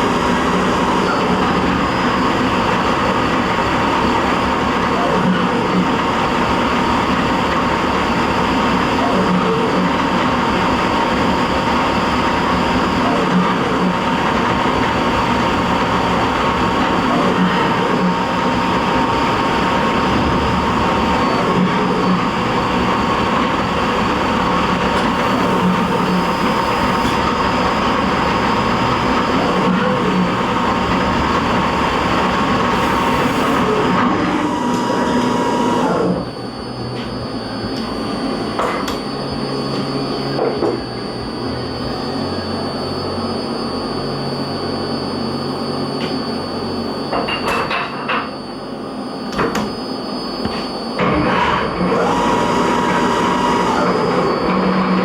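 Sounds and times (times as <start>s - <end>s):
machine hum: 0.0s - 55.0s
milling machine cutting plastic: 51.0s - 55.0s.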